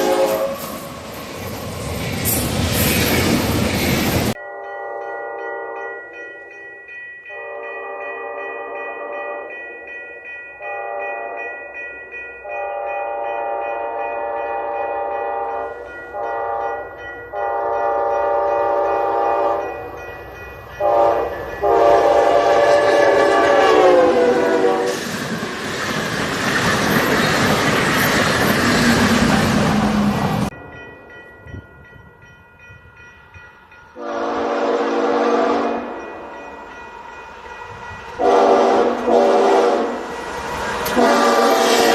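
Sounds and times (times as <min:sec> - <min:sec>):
train air horn: 0:00.0 - 0:00.9, 0:07.3 - 0:09.5, 0:13.1 - 0:16.8, 0:17.4 - 0:19.6, 0:20.8 - 0:25.1, 0:34.0 - 0:36.0, 0:38.2 - 0:40.1, 0:40.9 - 0:41.9
passing train rush: 0:00.0 - 0:41.9.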